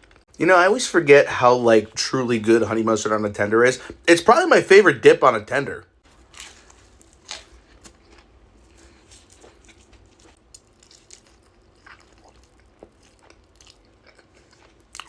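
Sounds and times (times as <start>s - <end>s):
low room hum: 0.0s - 15.0s
person chewing food: 6.0s - 15.0s.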